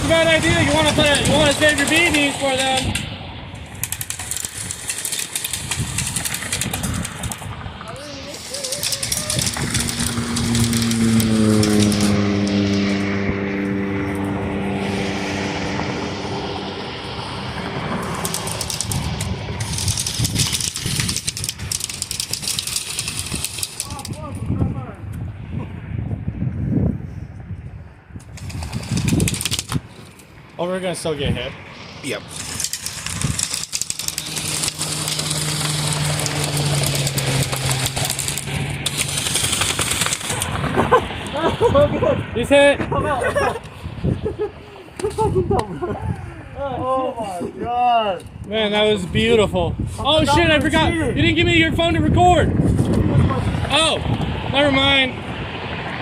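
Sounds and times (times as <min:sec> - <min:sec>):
motor hum: 0:00.0 - 0:14.8, 0:32.3 - 0:40.6
propeller aircraft engine drone: 0:00.0 - 0:47.5, 0:48.2 - 0:56.0.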